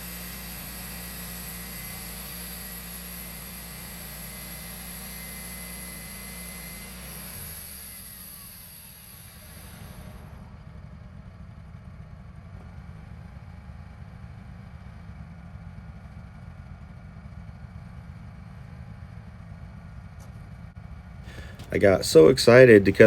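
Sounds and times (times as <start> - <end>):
sawmill engine rumbling: 0.0 - 10.5, 21.3 - 23.0.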